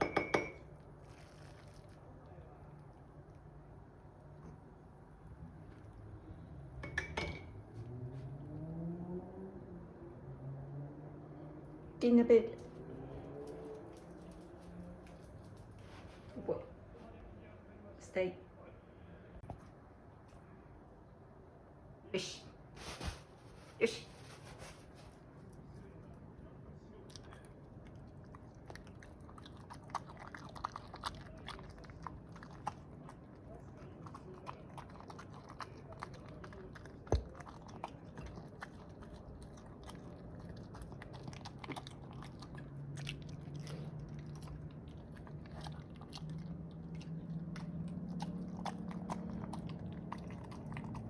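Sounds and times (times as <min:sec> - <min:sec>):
dog chewing rice: 0:00.8 - 0:04.8, 0:26.9 - 0:51.0.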